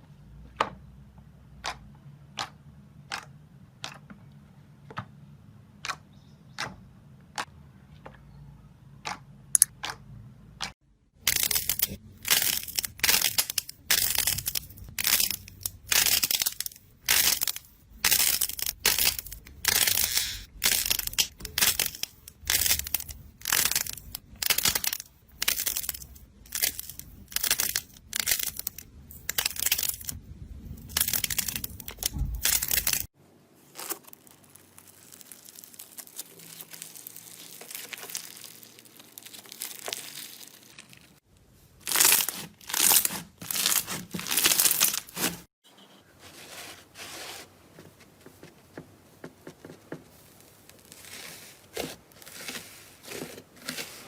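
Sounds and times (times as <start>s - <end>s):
slime squishing by hand: 10.6s - 41.2s.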